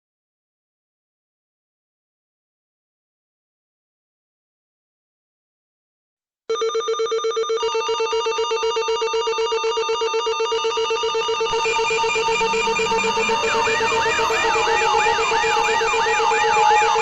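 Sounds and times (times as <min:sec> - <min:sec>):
pulsing electronic alarm tone: 0:06.5 - 0:17.0
siren whoop sweeping upward: 0:10.4 - 0:17.0.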